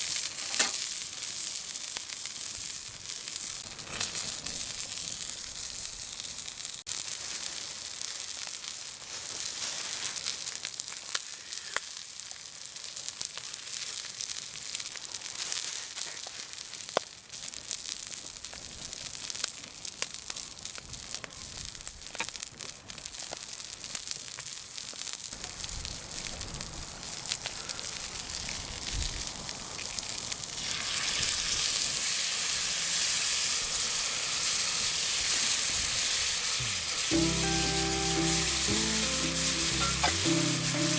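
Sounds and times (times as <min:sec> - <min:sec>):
meat sizzling on griddle: 0:00.0 - 0:40.9.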